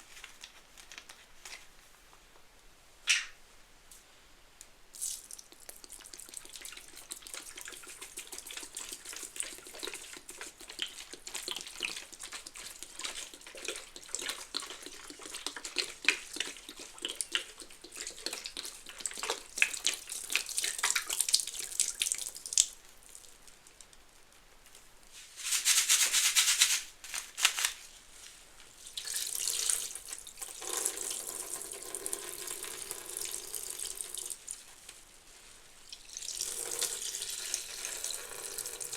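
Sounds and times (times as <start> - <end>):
soap suds crackling: 5.0 - 23.5, 25.2 - 31.2.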